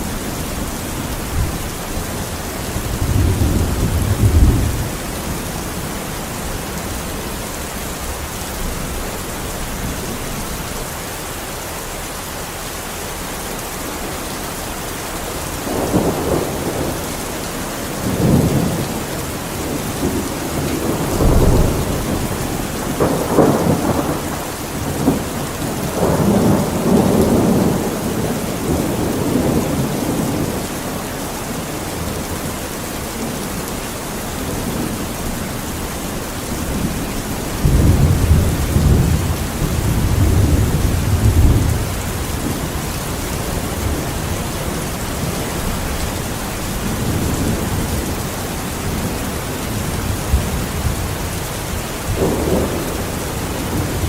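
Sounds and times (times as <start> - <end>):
rolling thunder: 0.0 - 6.7, 15.2 - 30.7, 34.4 - 54.0
steady rain: 0.0 - 54.0.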